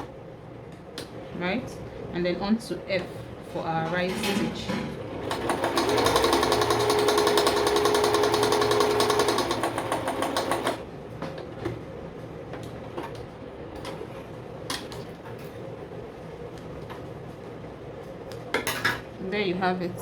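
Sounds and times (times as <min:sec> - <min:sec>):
sewing machine stitching: 0:05.1 - 0:10.8.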